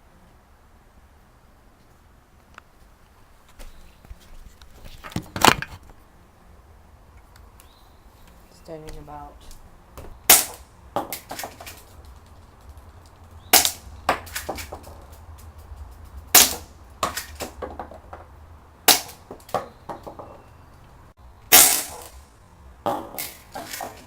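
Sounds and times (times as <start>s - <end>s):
small clicks and knocks: 8.3s - 18.3s
airsoft pistol shots: 10.3s - 11.8s, 13.5s - 15.0s, 16.3s - 17.6s, 18.9s - 19.4s, 21.5s - 22.3s.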